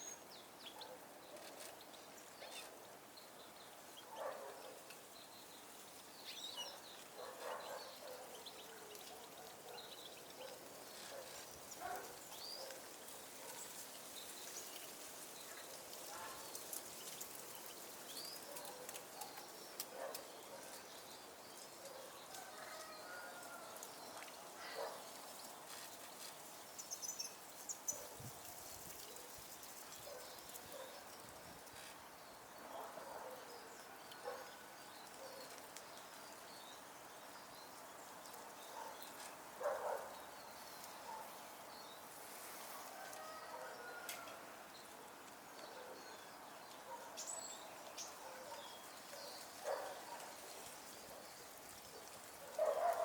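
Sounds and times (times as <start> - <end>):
small birds chirping: 0.0 - 22.8, 23.8 - 42.8.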